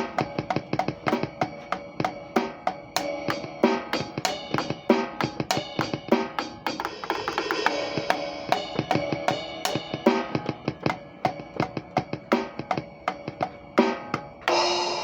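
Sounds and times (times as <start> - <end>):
drum kit playing: 0.0 - 15.0
cymbal wash: 7.5 - 15.0.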